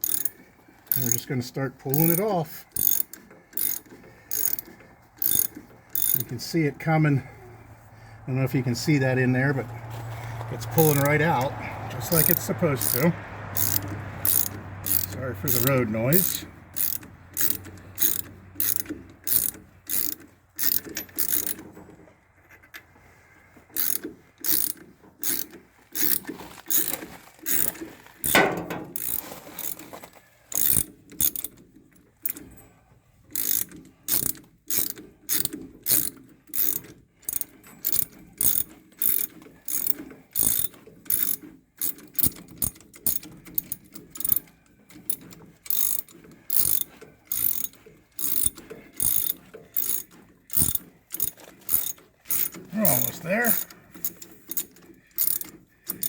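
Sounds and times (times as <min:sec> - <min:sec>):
ratchet wrench clicking: 0:00.0 - 0:01.3, 0:01.9 - 0:06.3, 0:10.8 - 0:21.6, 0:23.8 - 0:29.8, 0:30.5 - 0:31.6, 0:32.2 - 0:32.5, 0:33.3 - 0:56.0
metal clunk: 0:27.6 - 0:29.3.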